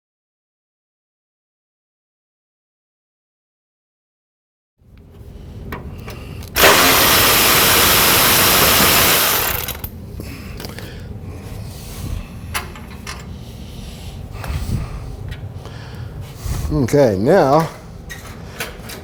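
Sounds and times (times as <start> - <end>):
power tool driving bolt: 6.6 - 9.9.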